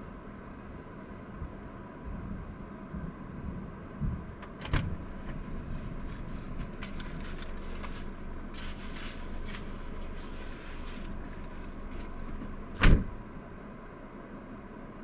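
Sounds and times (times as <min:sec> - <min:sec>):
vehicle engine hum from inside: 0:04.4 - 0:15.0
faint rustling: 0:04.8 - 0:13.4
loud thump: 0:12.3 - 0:13.3.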